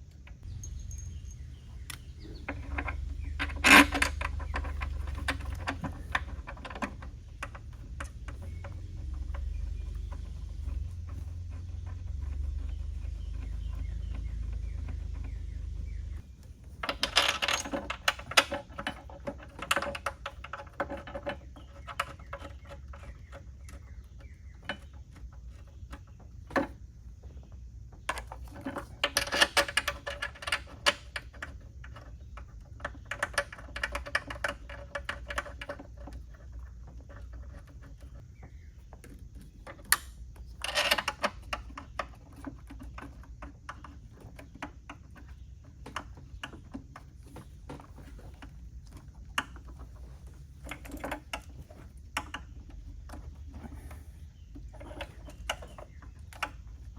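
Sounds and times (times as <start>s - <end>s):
steady low hum: 0.0s - 29.2s
metallic clatter of bolts and tools: 0.4s - 10.8s, 16.8s - 23.1s, 28.1s - 38.2s, 39.4s - 56.9s.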